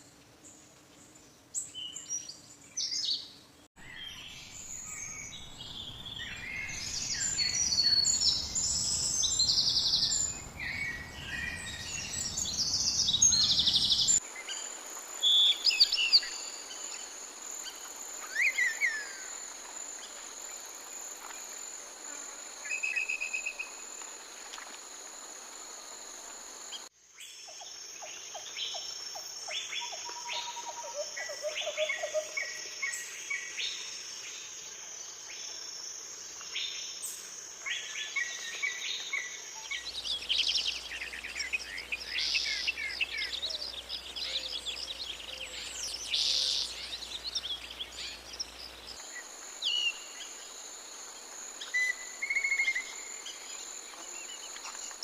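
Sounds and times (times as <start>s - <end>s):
birds chirping and trilling: 1.6s - 14.7s, 37.8s - 50.7s.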